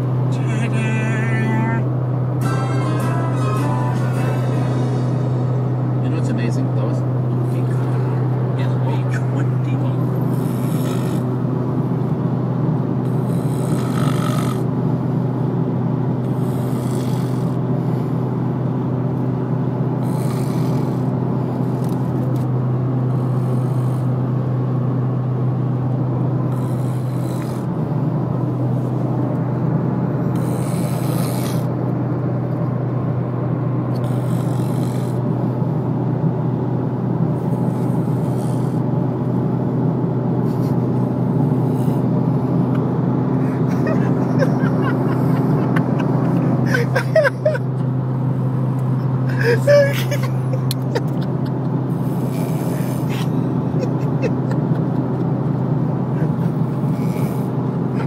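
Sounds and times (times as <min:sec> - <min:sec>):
steady low hum: 0:00.0 - 0:58.0
man snoring: 0:07.3 - 0:11.6, 0:13.0 - 0:15.1, 0:16.1 - 0:18.4, 0:19.7 - 0:22.0, 0:22.9 - 0:24.5, 0:26.4 - 0:29.2, 0:30.3 - 0:31.8, 0:33.9 - 0:35.6, 0:37.2 - 0:39.5, 0:40.6 - 0:42.8, 0:43.6 - 0:50.3, 0:51.9 - 0:54.0, 0:56.0 - 0:58.0.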